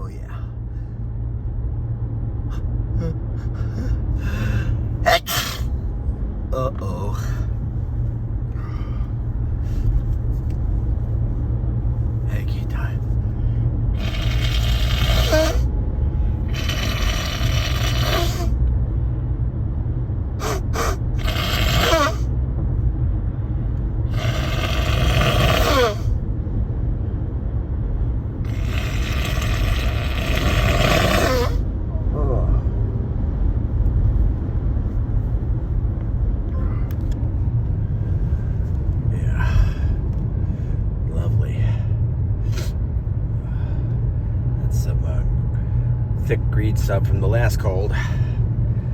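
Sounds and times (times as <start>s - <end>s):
low rumble: 0.0s - 25.4s, 26.0s - 48.9s
steady low hum: 0.0s - 48.9s
man blowing his nose: 5.1s - 5.7s, 14.0s - 15.7s, 16.5s - 18.6s, 20.4s - 22.3s, 24.1s - 26.2s, 28.5s - 31.6s.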